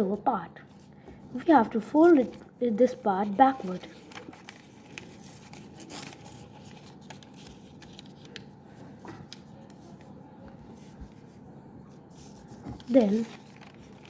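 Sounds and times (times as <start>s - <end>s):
paper rustling and creasing: 1.9s - 10.1s, 12.1s - 14.0s.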